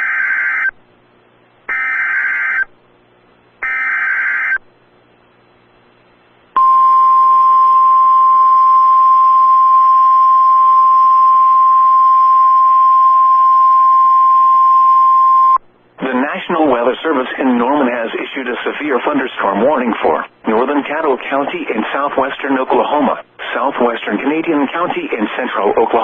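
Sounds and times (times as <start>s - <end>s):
steady attention tone: 6.5s - 16.3s.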